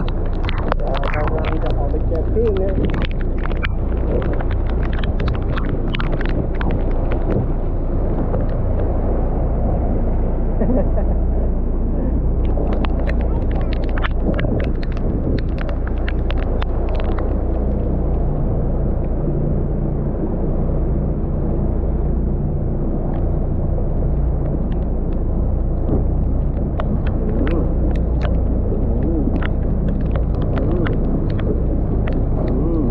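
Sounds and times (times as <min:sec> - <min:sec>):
raindrops ticking nearby: 0:00.0 - 0:10.2, 0:12.3 - 0:19.8, 0:20.8 - 0:32.9
rain: 0:00.0 - 0:11.0, 0:11.9 - 0:32.9.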